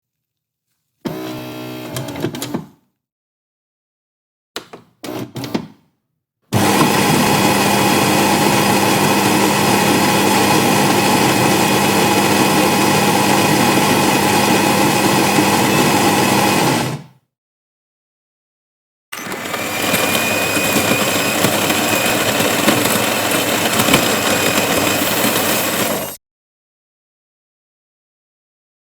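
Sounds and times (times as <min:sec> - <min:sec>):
coffee grinder motor grinding: 0:01.1 - 0:02.2, 0:06.6 - 0:17.0, 0:19.2 - 0:26.2.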